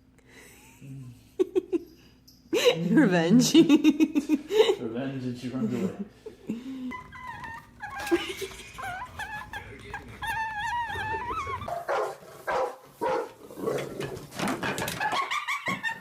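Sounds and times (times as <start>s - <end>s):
dog whining: 6.8s - 11.8s
dog barking: 8.8s - 13.4s.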